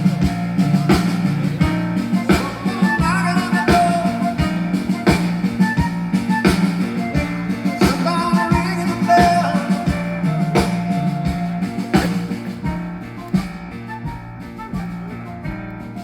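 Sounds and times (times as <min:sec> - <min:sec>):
person singing: 0:00.0 - 0:12.8
drum kit beat: 0:00.0 - 0:16.0
guitar: 0:00.0 - 0:16.0
live rock band playing: 0:00.0 - 0:16.0.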